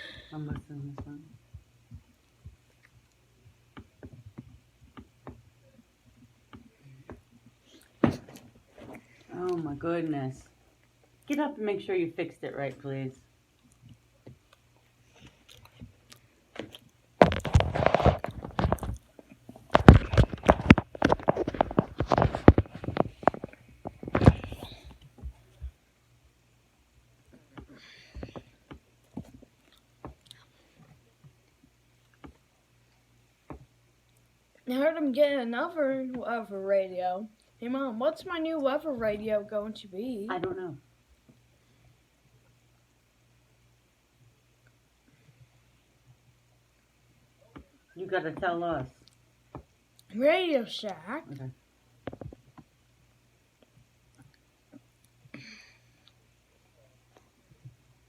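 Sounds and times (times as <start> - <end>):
low steady hum: 0.0 - 58.0
faint clicks and taps: 0.5 - 9.6, 13.6 - 25.8, 27.3 - 32.4, 33.4 - 34.6, 46.8 - 50.1, 50.9 - 52.8
chewing: 13.6 - 17.0, 29.6 - 30.5.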